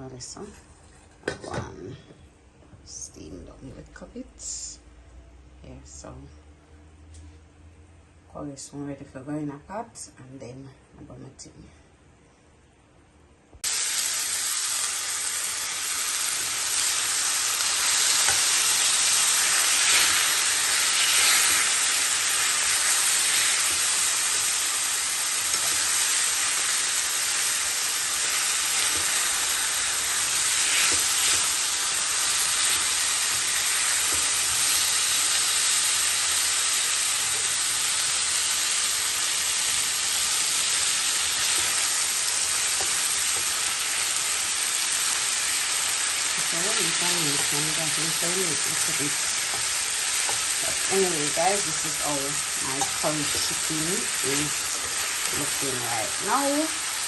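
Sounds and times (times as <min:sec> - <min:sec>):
chicken sizzling in hot oil: 0:13.6 - 0:57.0.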